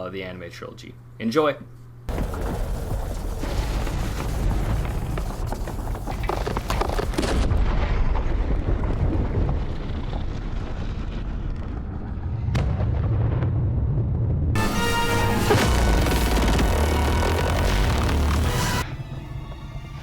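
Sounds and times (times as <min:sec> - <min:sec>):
deep continuous rumble: 0:02.1 - 0:20.0
heavy booms and explosions: 0:02.1 - 0:20.0
sharp crack: 0:14.6 - 0:18.8.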